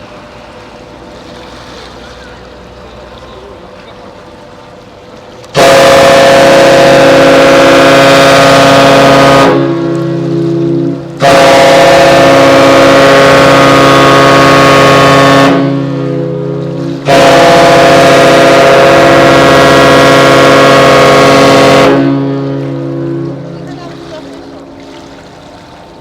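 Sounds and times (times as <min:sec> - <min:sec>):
ship's whistle blasts: 0:05.5 - 0:23.5.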